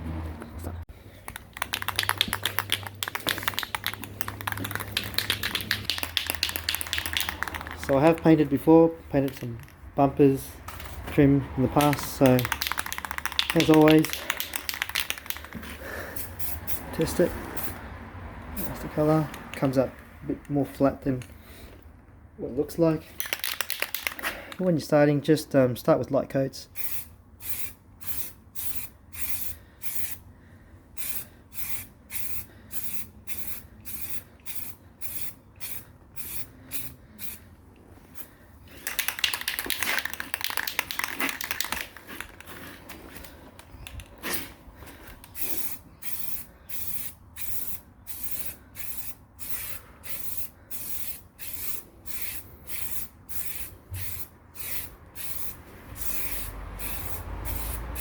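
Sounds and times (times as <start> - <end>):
aerosol spray can hissing: 1.6 - 8.3, 11.8 - 16.8, 26.8 - 30.2, 31.0 - 37.4, 45.3 - 58.0.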